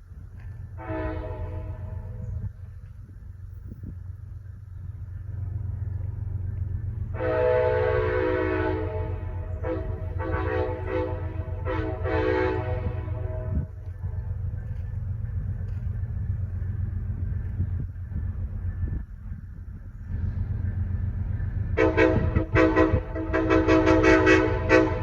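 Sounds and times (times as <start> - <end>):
train rumbling: 0.0 - 25.0
multi-note air horn blasts: 0.8 - 2.3, 7.1 - 13.7, 21.8 - 25.0.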